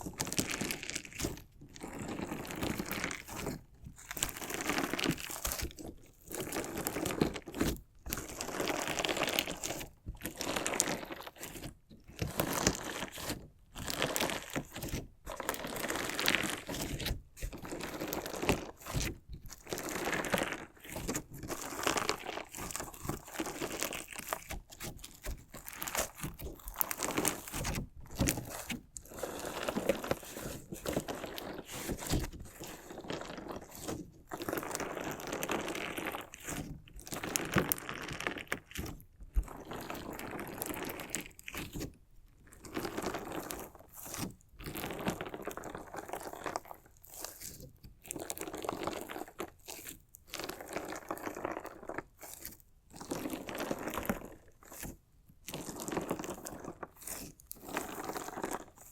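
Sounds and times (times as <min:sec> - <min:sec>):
slime crackling and crunching: 0:00.0 - 0:58.9.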